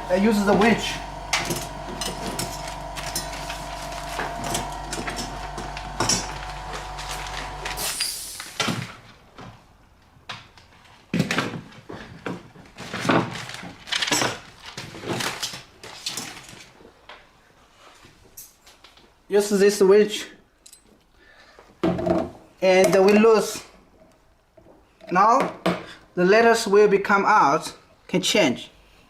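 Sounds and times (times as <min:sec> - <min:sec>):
sealer motor hum: 0:00.0 - 0:09.0
metal tools clinking: 0:00.2 - 0:06.5, 0:20.6 - 0:21.0
brief hiss: 0:07.8 - 0:08.6.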